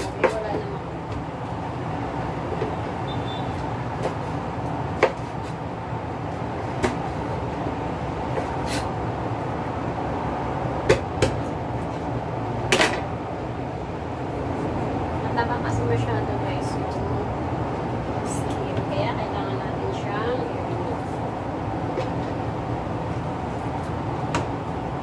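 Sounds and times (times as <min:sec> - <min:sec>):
steady background hum: 0:00.0 - 0:25.0.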